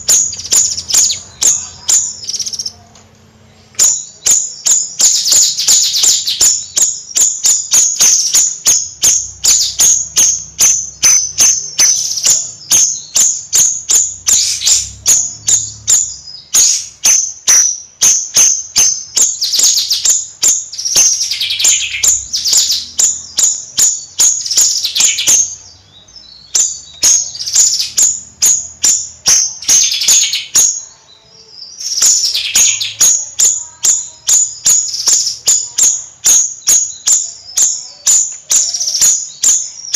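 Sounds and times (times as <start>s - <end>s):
songbird chattering song: 0.0s - 39.9s.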